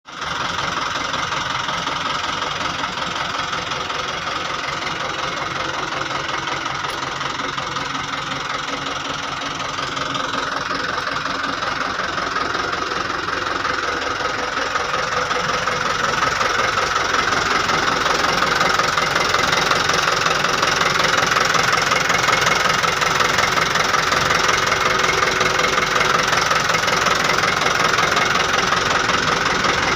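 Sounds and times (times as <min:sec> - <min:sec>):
diesel truck engine idling: 0:00.1 - 0:29.9.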